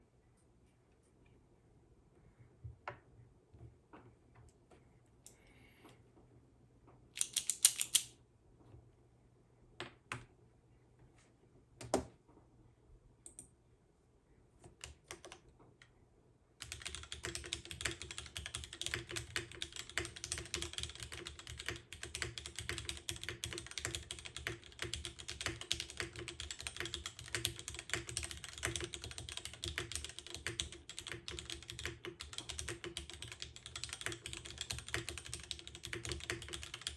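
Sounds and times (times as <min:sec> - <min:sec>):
mechanical keyboard typing: 0:07.2 - 0:08.1, 0:14.8 - 0:15.4, 0:16.6 - 0:36.9.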